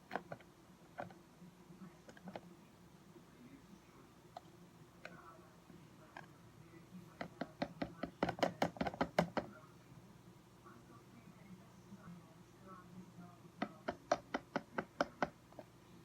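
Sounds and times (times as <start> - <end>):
sharp taps on hard object: 7.2 - 9.5, 13.6 - 15.4.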